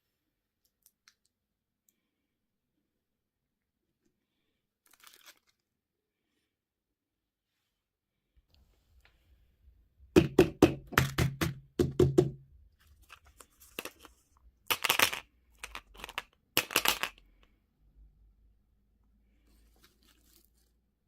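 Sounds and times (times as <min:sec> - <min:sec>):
wrapper crinkling: 0:04.8 - 0:05.8, 0:19.7 - 0:20.8
hollow plastic knocks: 0:10.1 - 0:12.5.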